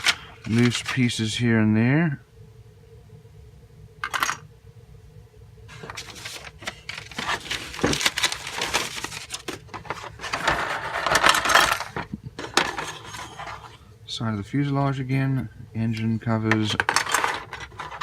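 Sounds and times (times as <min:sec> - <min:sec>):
plastic parts clicking and rattling: 0:00.0 - 0:01.0, 0:05.8 - 0:13.7, 0:16.5 - 0:18.0.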